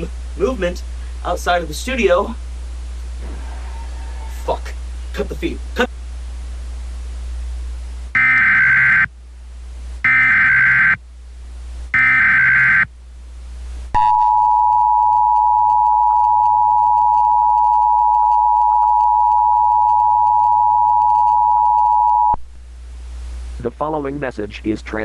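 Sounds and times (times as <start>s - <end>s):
low hum: 2.4s - 8.2s.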